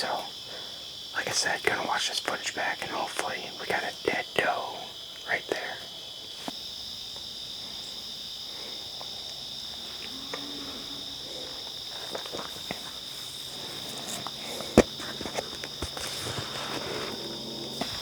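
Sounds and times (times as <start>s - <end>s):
crickets trilling: 0.0s - 18.0s
faint rustles: 7.6s - 18.0s.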